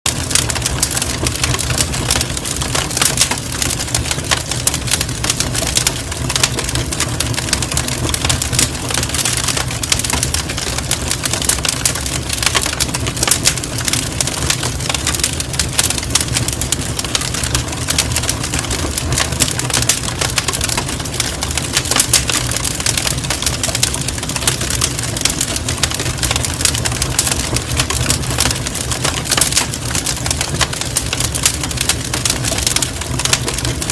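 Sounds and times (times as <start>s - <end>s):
campfire wood crackling: 0.1s - 33.9s.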